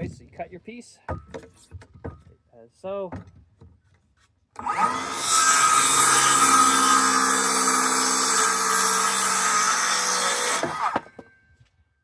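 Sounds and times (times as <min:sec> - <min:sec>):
power saw cutting wood: 0:04.6 - 0:11.2.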